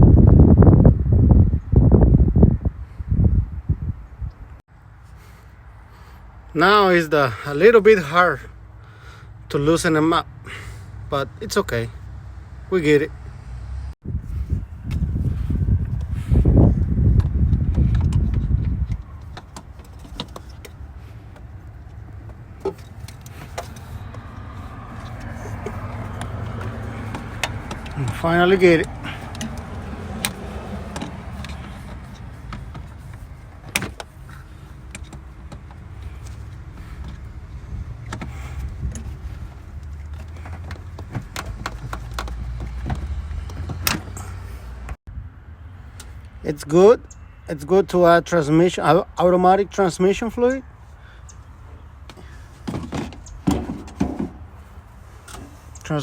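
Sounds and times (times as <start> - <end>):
tools clicking and clinking on metal: 18.9 - 37.3.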